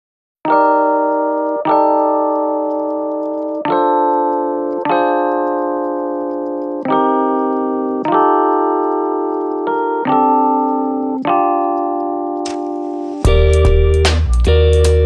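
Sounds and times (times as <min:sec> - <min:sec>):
slow piano chords: 0:00.5 - 0:15.0.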